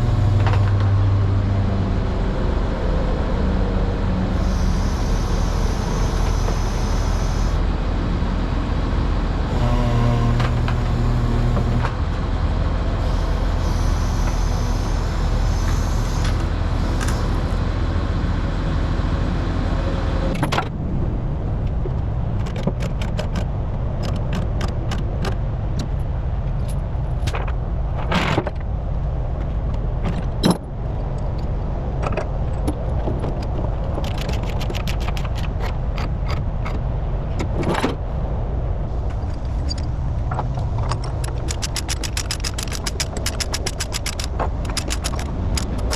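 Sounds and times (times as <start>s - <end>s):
diesel engine running: 0.0s - 22.4s.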